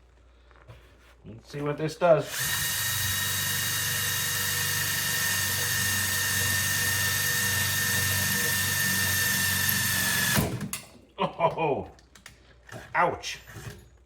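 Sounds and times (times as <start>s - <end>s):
drill with hole saw whining: 2.2s - 10.8s, 12.8s - 14.0s.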